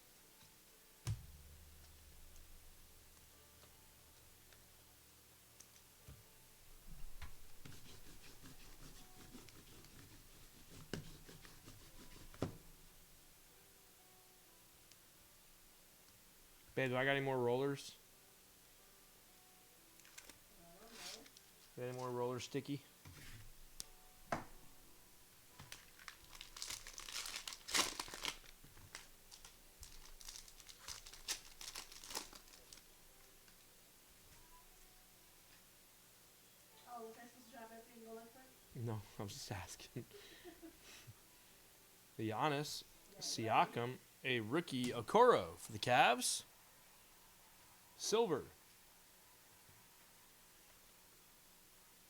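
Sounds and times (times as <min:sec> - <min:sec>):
plastic wrappers crinkling and tearing: 0:20.0 - 0:22.1, 0:25.5 - 0:33.7
trading cards rustling: 0:25.7 - 0:32.9.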